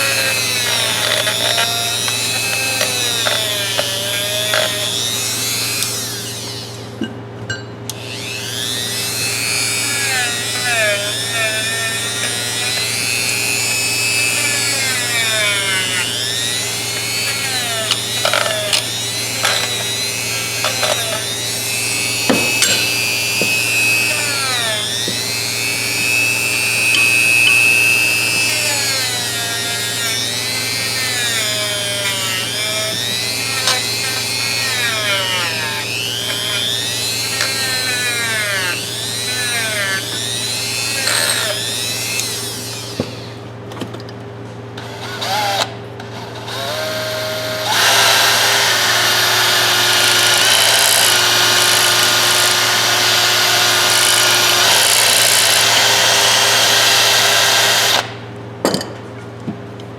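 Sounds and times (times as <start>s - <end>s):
wire wheel whining against steel: 0.0s - 7.0s, 7.9s - 43.5s.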